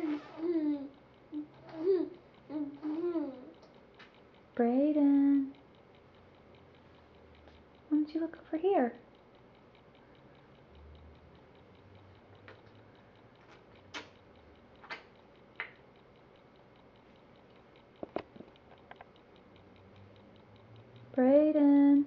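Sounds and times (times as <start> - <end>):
faint squeaks and clicks: 0.0 - 4.2
faint steady ticking: 0.0 - 22.0.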